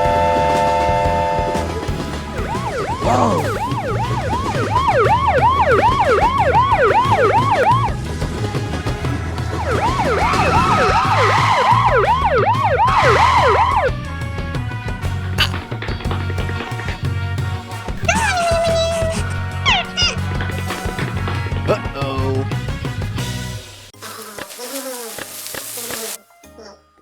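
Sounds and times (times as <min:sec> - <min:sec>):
cartoon siren effect: 0:00.0 - 0:01.8, 0:02.4 - 0:08.0, 0:09.6 - 0:13.9, 0:18.0 - 0:20.2
background music: 0:00.0 - 0:27.0.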